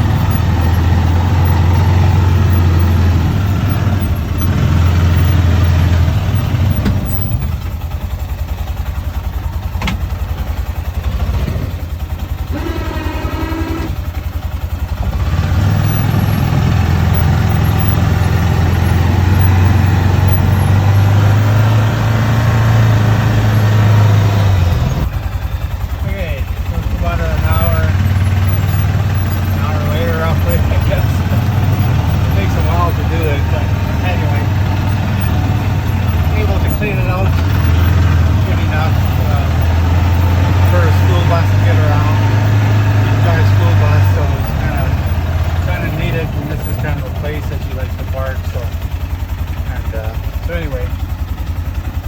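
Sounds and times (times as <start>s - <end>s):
vehicle engine under load: 0.0s - 52.0s
brief engine whine: 12.4s - 14.2s.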